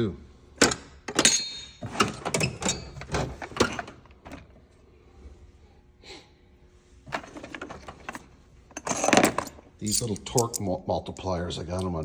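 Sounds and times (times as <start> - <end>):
tool chest clacks and rattles: 0.6 - 4.5, 7.1 - 10.6.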